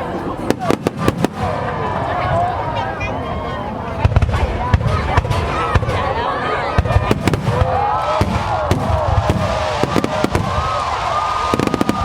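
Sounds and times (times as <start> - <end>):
fireworks cracks and bangs: 0.4 - 1.8, 4.0 - 12.0
fireworks whistles: 8.1 - 12.0.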